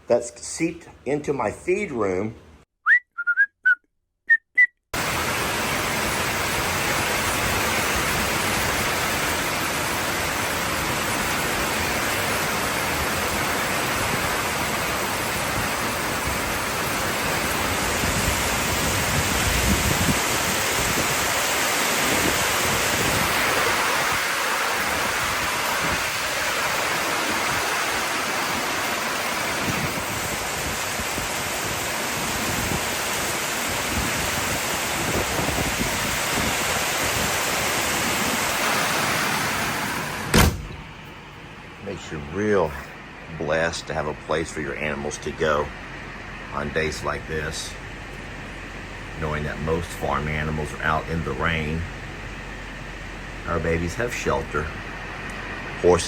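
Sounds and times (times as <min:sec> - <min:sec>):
heavy rain falling: 0:05.0 - 0:40.7.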